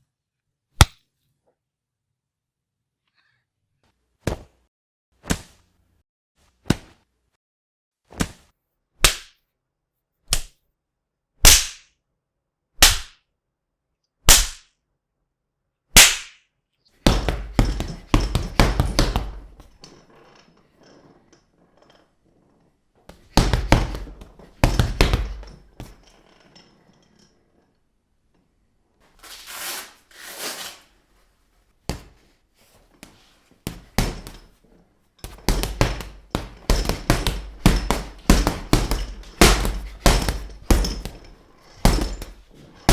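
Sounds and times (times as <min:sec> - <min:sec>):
punch hits: 0:11.5 - 0:11.8, 0:12.8 - 0:13.1, 0:14.3 - 0:14.6, 0:16.0 - 0:16.4, 0:35.3 - 0:42.5.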